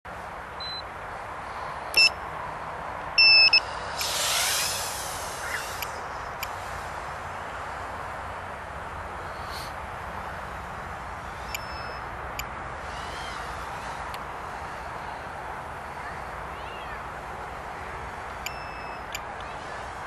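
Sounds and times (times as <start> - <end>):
short electronic beeps: 0.6 - 0.8, 2.0 - 2.2, 3.2 - 3.6, 11.5 - 12.1, 18.4 - 19.3
drone motors spinning up: 3.6 - 6.0, 12.8 - 14.2
steady hiss: 3.6 - 11.6.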